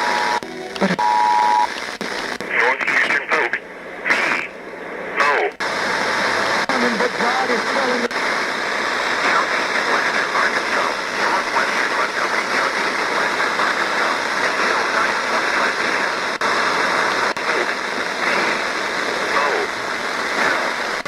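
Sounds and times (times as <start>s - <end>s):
radio static hiss: 0.0s - 21.0s
faint voice on radio: 2.4s - 4.5s, 5.2s - 5.6s, 9.2s - 16.3s, 17.3s - 18.6s, 19.2s - 19.8s.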